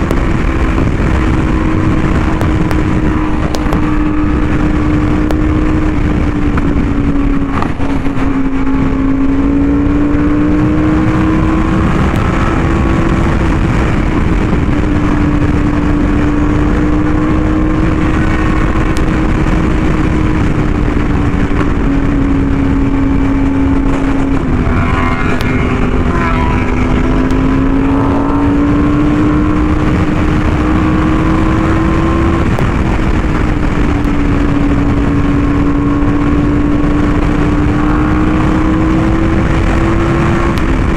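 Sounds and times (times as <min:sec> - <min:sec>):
motorcycle engine cruising: 0:00.0 - 0:40.9
wind on microphone: 0:00.0 - 0:40.9.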